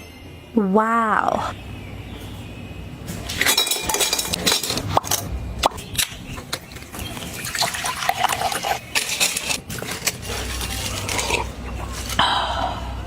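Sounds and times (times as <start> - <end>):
household items clicking and clinking: 3.2 - 5.3, 6.4 - 12.2.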